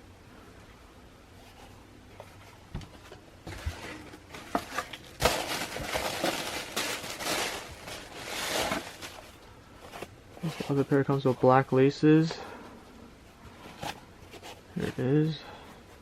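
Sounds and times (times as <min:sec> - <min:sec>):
packaging rustling and clicking: 0:02.8 - 0:10.1.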